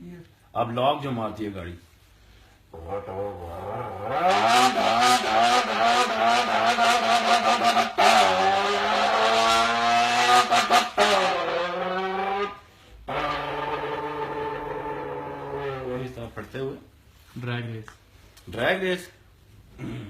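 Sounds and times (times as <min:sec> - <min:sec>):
person imitating car engine: 0:02.7 - 0:16.2.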